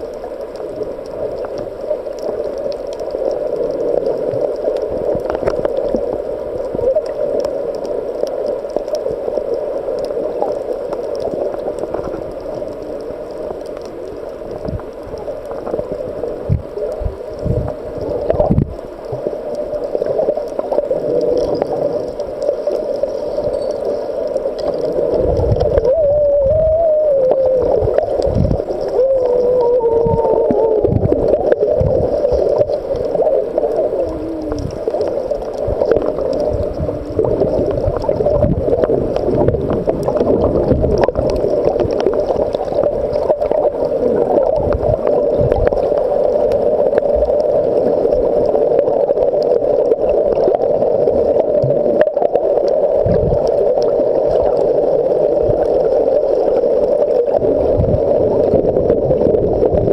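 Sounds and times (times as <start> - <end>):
dense underwater crackling hum: 0.0 - 59.9
wavering underwater tonal calls: 25.6 - 32.4.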